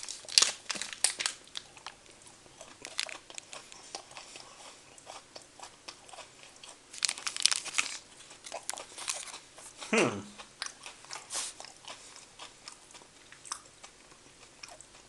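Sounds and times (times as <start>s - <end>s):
wrapper crackling: 0.0s - 2.0s, 2.6s - 3.5s, 6.9s - 9.4s
candy bar crunching: 0.0s - 13.7s
chewing clicks: 1.1s - 4.2s.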